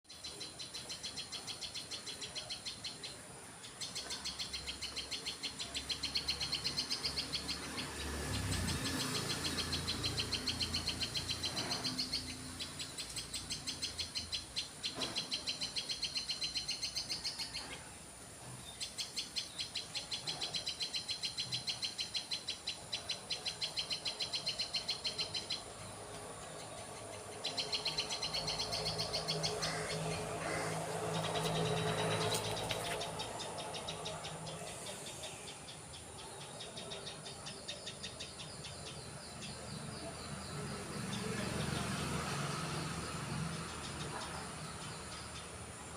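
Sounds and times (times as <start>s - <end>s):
small birds chirping: 0.1s - 45.9s.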